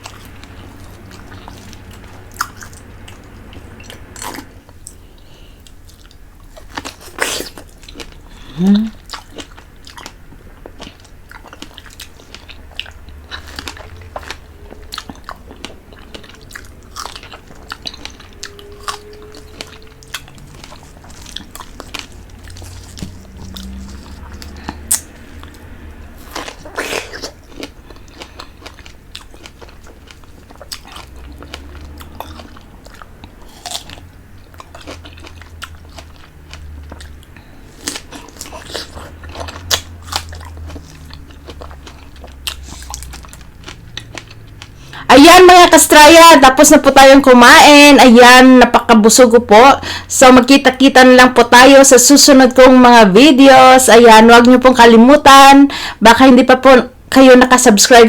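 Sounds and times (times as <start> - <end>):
person sucking and chewing: 0.0 - 45.1.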